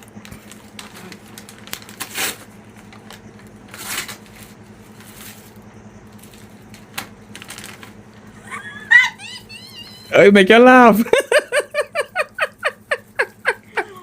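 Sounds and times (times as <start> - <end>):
gift packaging rustling and crinkling: 0.0 - 8.3
faint low hum: 0.0 - 14.0.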